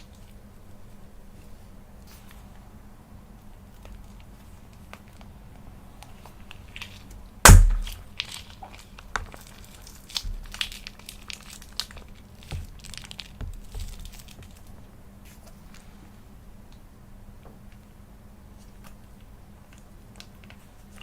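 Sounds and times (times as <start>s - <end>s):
clicks and crinkling: 6.4s - 14.8s
sharp crack: 7.5s - 8.0s.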